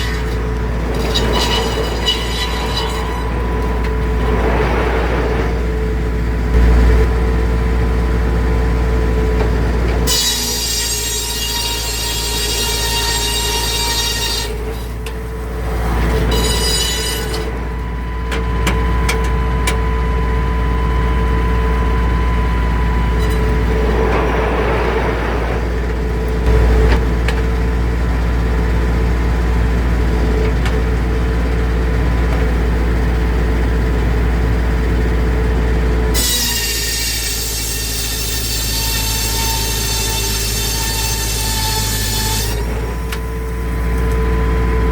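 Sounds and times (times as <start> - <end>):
circular saw blade cutting wood: 0.0 - 5.5, 10.0 - 17.7, 36.1 - 43.2.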